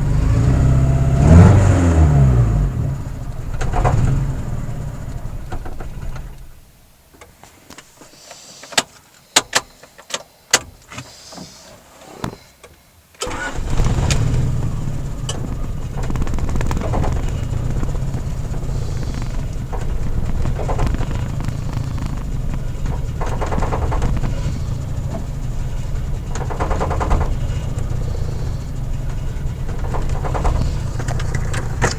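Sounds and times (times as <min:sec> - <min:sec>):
car engine idling roughly: 0:00.0 - 0:06.8, 0:13.3 - 0:31.9
sharp clicks: 0:13.2 - 0:31.9.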